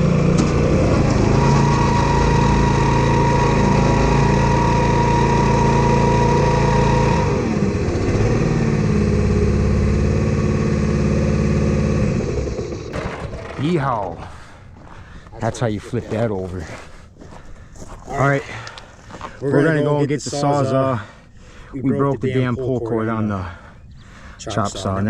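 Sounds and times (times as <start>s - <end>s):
high steady whine: 0.0s - 12.9s
vehicle engine under load: 0.0s - 15.2s.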